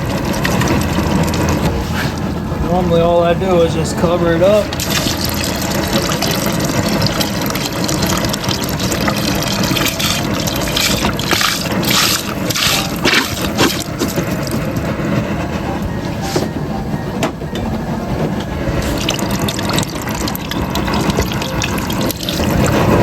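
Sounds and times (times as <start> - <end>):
broth pouring into a pot: 4.7 - 14.6, 18.8 - 23.0.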